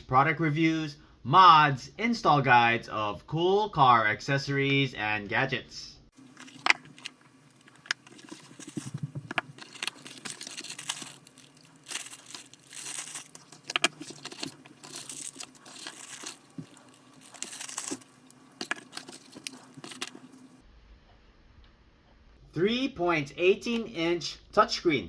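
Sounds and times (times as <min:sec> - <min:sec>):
plastic packaging crinkling: 0:06.2 - 0:20.6.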